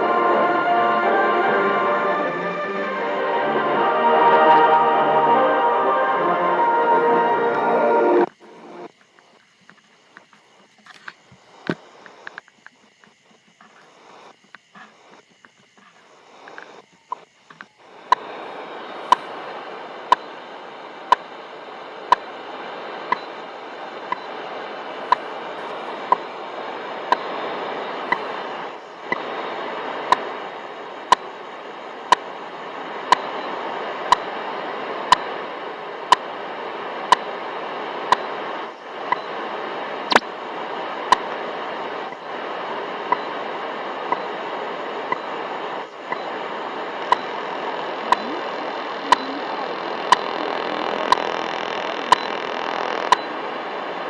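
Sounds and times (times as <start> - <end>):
static hiss: 0.0 - 54.0
time signal ticks: 23.1 - 23.3, 33.1 - 33.4, 35.1 - 35.3, 43.1 - 43.3, 47.0 - 47.4, 48.1 - 49.4, 50.0 - 50.4, 51.1 - 51.3, 52.0 - 52.4, 53.1 - 53.3.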